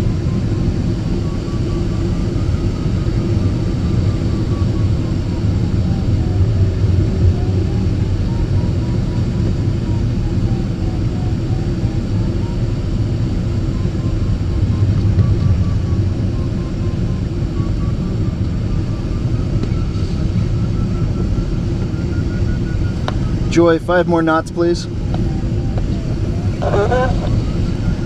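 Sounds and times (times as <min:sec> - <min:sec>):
beeping variometer tone: 0:00.0 - 0:28.0
plane engine drone: 0:00.0 - 0:28.0.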